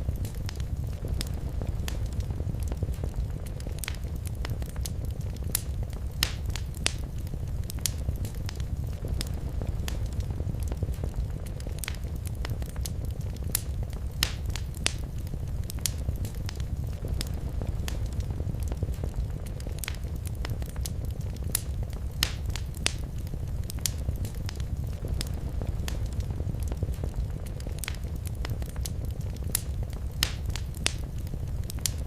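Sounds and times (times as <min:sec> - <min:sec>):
low rumble of flames: 0:00.0 - 0:32.0
sharp pops of fire: 0:00.0 - 0:32.0
wood fire crackling: 0:00.0 - 0:32.0.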